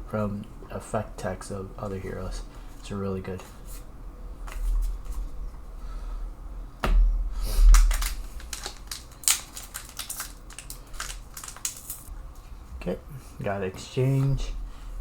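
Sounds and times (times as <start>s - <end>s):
trading cards clicking and rustling: 7.6s - 12.1s.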